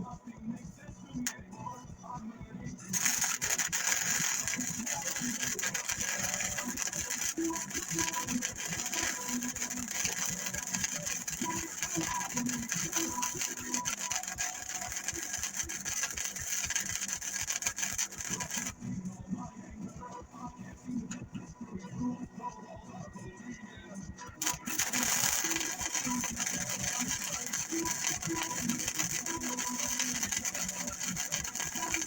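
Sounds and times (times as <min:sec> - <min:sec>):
welding arc crackle: 0:02.9 - 0:18.8, 0:24.4 - 0:32.0.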